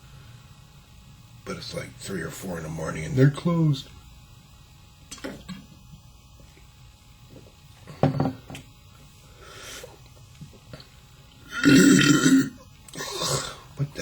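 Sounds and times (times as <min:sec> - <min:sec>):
man belching: 0:11.5 - 0:13.6.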